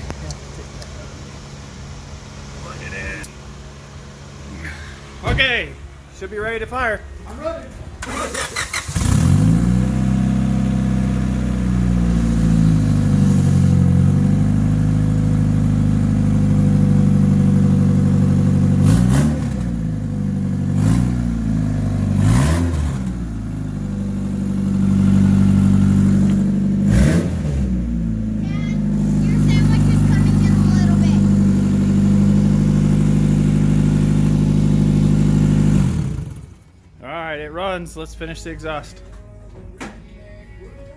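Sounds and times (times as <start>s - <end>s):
car engine cranking and idling: 0.0s - 39.8s
engine throttle blips: 7.9s - 36.8s.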